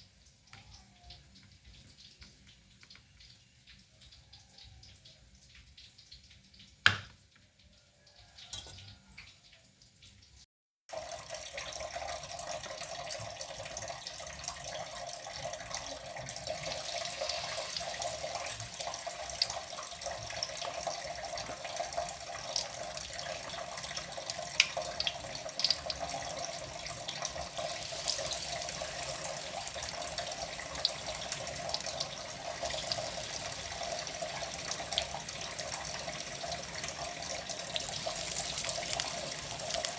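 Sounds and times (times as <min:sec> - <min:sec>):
tap water running into sink: 0:10.9 - 0:39.9.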